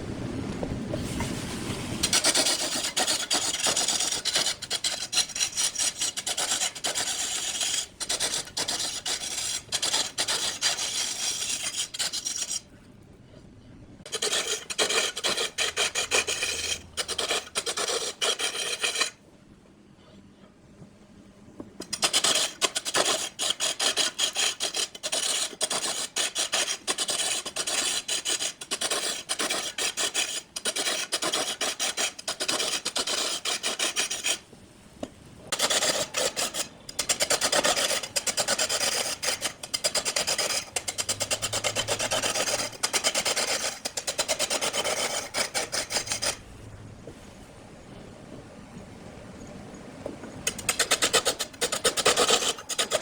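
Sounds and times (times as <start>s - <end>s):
lathe tool scraping wood: 2.0s - 12.6s, 14.1s - 19.2s, 21.8s - 34.4s, 35.5s - 46.4s, 50.5s - 53.0s.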